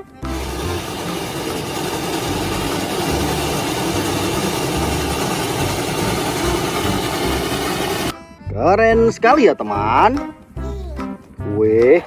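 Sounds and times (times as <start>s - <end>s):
locomotive engine rumbling: 0.0s - 8.2s
loud hiss: 0.2s - 8.1s.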